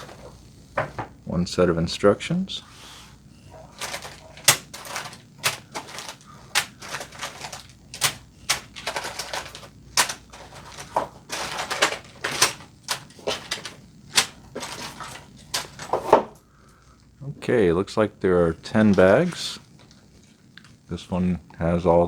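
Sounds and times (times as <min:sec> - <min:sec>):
plastic bags rustling: 0:00.0 - 0:00.5, 0:02.8 - 0:16.4
plastic bricks rattling in bags: 0:03.5 - 0:16.4.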